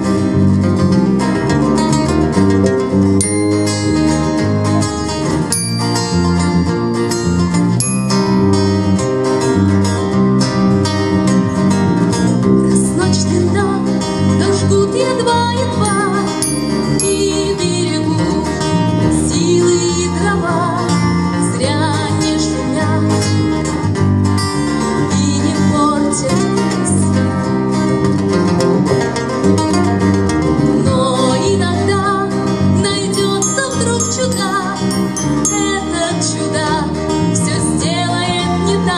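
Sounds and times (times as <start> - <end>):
rock band playing: 0.0 - 19.4, 26.6 - 30.8, 32.3 - 37.8
guitar melody: 0.0 - 38.9.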